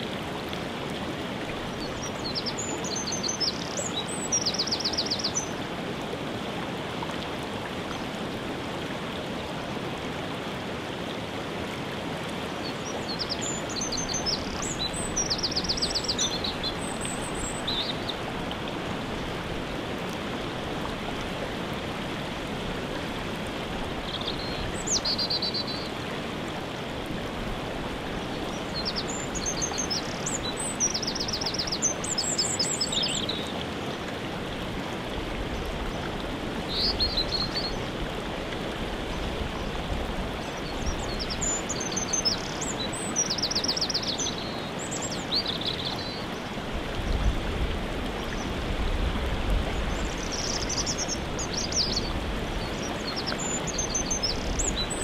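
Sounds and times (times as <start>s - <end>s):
waterfall rushing: 0.0s - 55.0s
songbird singing with trills: 28.6s - 33.5s, 40.5s - 46.2s, 49.9s - 55.0s.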